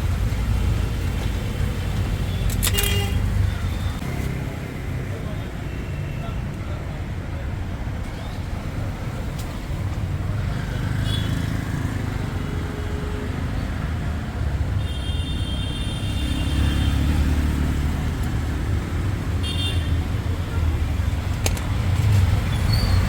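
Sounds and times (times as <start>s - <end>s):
road traffic rumbling: 0.0s - 23.0s.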